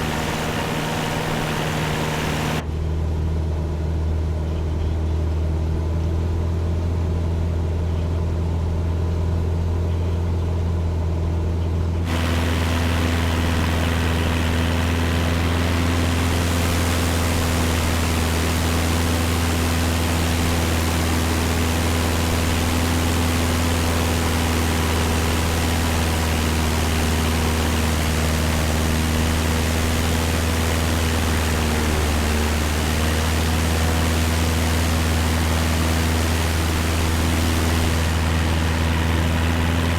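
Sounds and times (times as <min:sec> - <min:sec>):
propeller plane engine droning: 0:00.0 - 0:39.9
rushing air noise: 0:12.1 - 0:31.6, 0:33.1 - 0:39.9.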